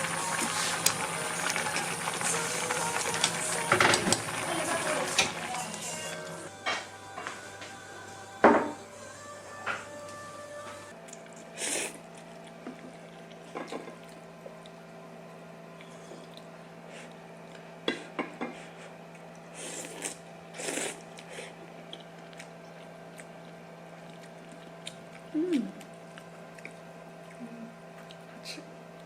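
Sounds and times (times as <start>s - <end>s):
steady electrical hum: 0.0s - 29.0s.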